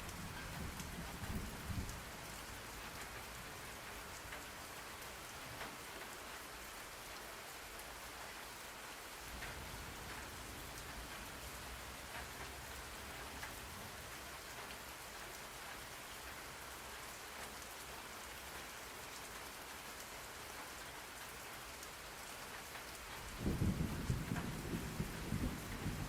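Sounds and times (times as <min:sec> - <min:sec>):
steady rain falling: 0:00.0 - 0:26.0
thunder rumbling: 0:23.4 - 0:26.0.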